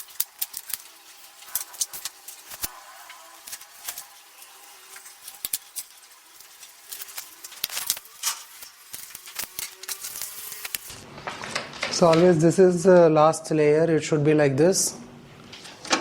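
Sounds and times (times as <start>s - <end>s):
plastic parts clicking and rustling: 0.0s - 12.2s.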